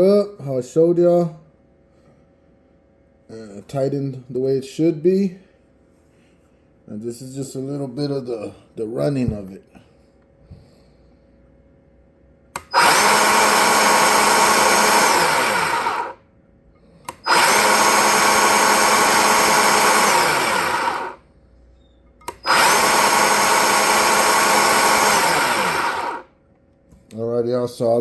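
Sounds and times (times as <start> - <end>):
cordless chainsaw running: 12.6 - 16.2, 17.1 - 21.2, 22.3 - 26.3.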